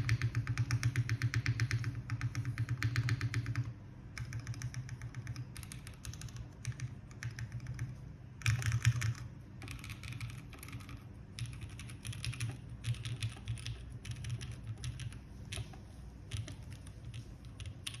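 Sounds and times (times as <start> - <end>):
mechanical keyboard typing: 0.0 - 18.0.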